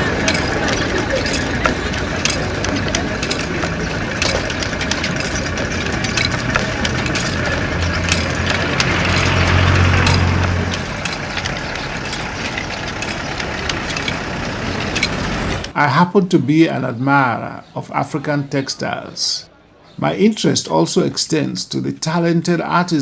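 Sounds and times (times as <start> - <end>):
clicks and knocks: 0.0 - 15.7
low engine hum: 0.0 - 15.8.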